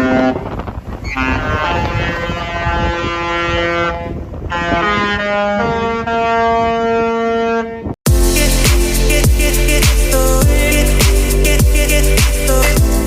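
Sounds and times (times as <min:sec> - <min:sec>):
ship's horn tones: 0:00.0 - 0:13.0
music with a steady beat: 0:08.0 - 0:13.0.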